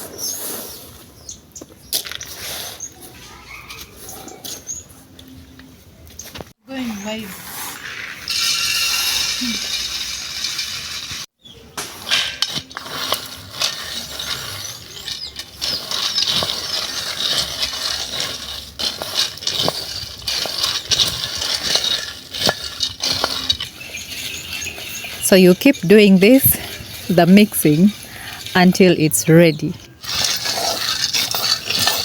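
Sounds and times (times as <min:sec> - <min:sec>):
nuts rattling in a pan: 0:08.2 - 0:11.3, 0:12.4 - 0:32.0.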